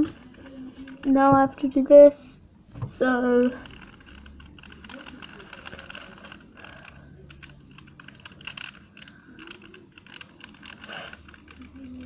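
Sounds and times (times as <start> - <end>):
plastic puzzle cube clicking: 3.5 - 12.0.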